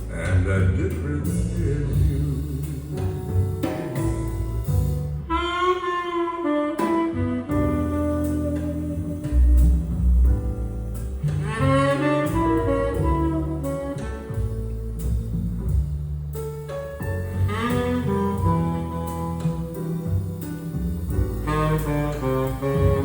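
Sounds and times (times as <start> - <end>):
walking double bass: 0.0 - 23.0
saxophone playing held phrases: 5.2 - 9.9, 11.3 - 15.0, 17.3 - 20.1, 21.1 - 23.0.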